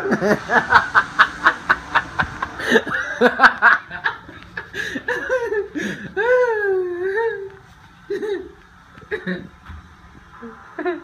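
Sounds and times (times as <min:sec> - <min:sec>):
person laughing in quick bursts: 0:00.0 - 0:07.5.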